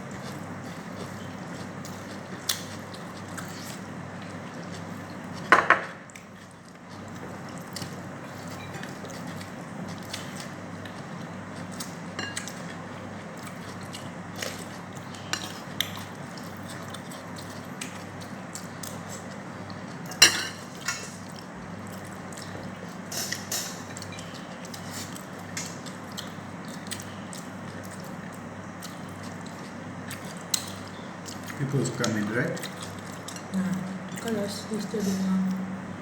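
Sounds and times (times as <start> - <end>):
cutlery clinking on a plate: 5.5 - 6.0, 12.2 - 12.6, 20.1 - 21.2.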